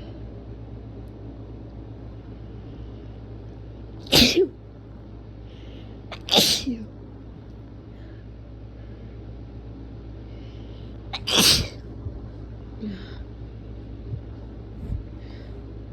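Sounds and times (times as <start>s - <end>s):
person sneezing: 4.1s - 4.5s, 6.1s - 6.8s, 11.2s - 11.8s.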